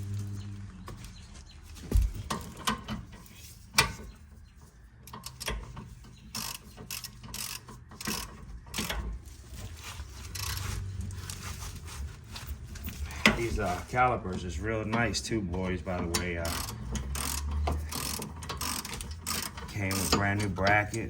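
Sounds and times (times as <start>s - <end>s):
hand ratchet clicking: 5.1s - 9.0s, 16.0s - 21.0s.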